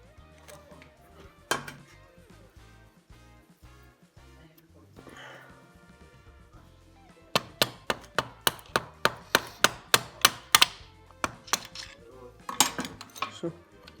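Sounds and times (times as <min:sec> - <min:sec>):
hammer knocking: 0:07.4 - 0:11.8.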